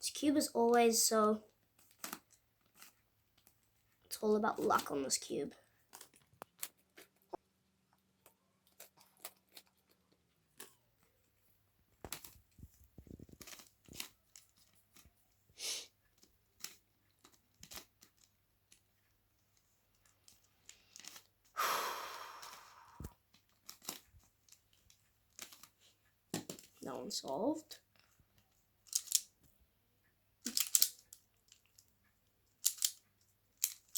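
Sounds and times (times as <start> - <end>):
twisty puzzle clicking: 28.8 - 29.3, 30.4 - 31.9, 32.5 - 33.9.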